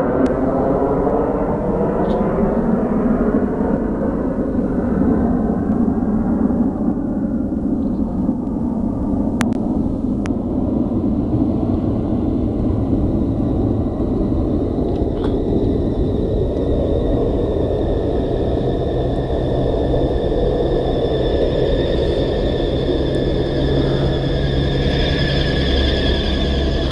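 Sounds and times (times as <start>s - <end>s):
low rumble in the sky: 0.0s - 26.9s
thin high whine: 12.9s - 26.9s.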